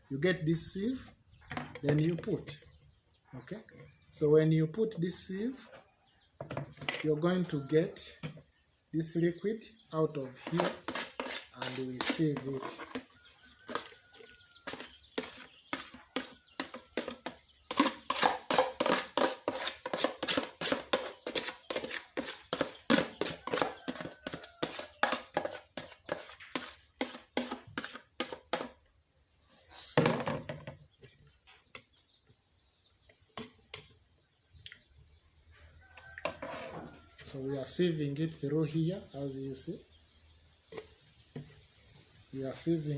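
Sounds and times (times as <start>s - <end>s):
light knocks and scrapes in sieve: 10.3s - 28.8s.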